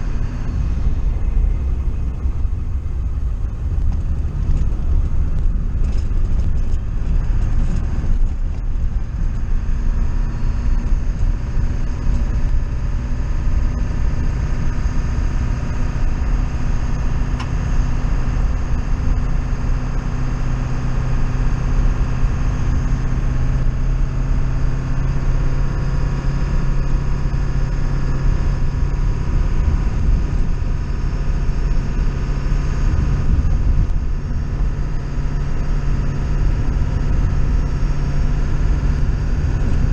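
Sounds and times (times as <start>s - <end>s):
vehicle engine rumbling: 0.0s - 39.9s.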